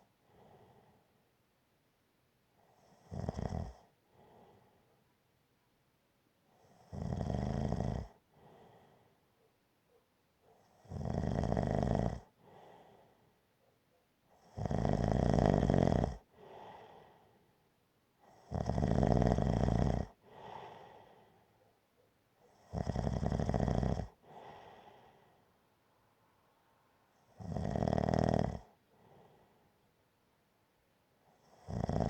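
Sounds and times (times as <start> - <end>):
person snoring: 3.0 - 3.8, 6.8 - 8.1, 10.8 - 12.3, 14.5 - 17.0, 18.4 - 21.0, 22.7 - 24.9, 27.4 - 28.7, 31.4 - 32.0
soft breath out: 8.3 - 9.3, 12.4 - 13.4, 16.3 - 17.6, 20.2 - 21.7, 24.2 - 25.6, 28.9 - 29.8.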